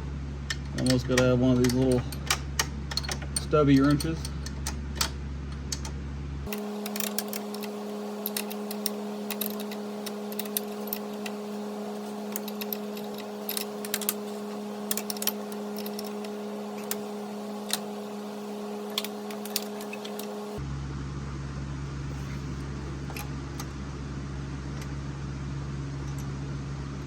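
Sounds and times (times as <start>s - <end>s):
steady low hum: 0.0s - 27.0s
wrench clinking on metal fittings: 0.5s - 5.1s.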